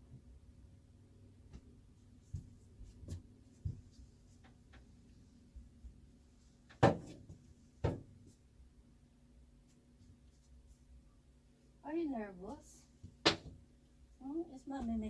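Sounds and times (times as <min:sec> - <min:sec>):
household knocks and clatter: 0:06.7 - 0:08.3, 0:13.0 - 0:13.6.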